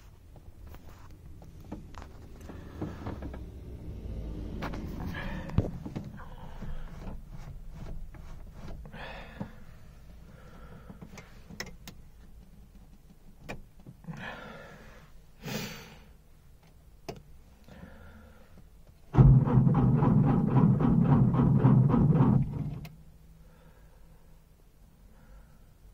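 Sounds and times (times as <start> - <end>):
starter cranking car engine: 1.3 - 7.2, 19.1 - 23.0.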